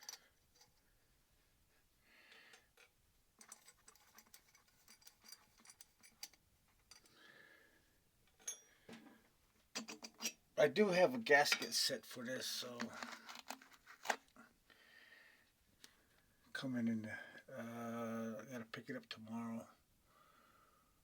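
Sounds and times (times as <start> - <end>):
metal parts clicking and tapping: 0.0 - 0.8, 2.5 - 7.1, 9.8 - 10.4.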